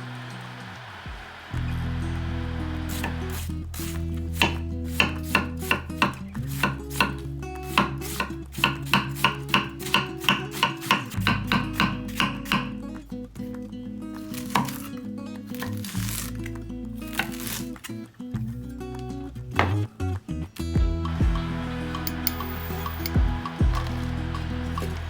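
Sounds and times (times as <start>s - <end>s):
knife chopping on cutting board: 4.4s - 12.7s
background music with held notes: 18.4s - 25.0s.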